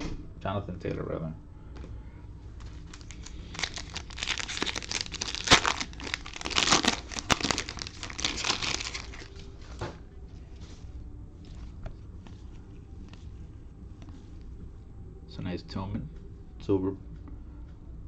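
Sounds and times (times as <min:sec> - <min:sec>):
cellophane wrapper tearing and crumpling: 0:02.7 - 0:09.5.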